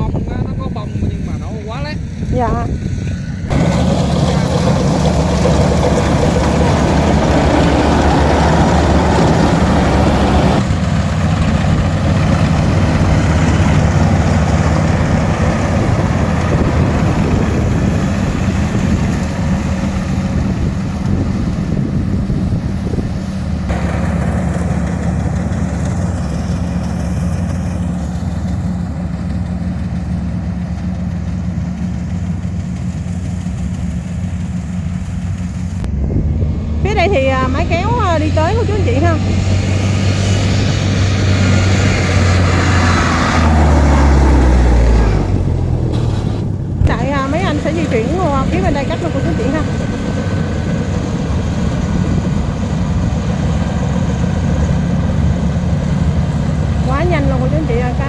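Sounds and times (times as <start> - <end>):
diesel engine running: 0.0 - 58.0.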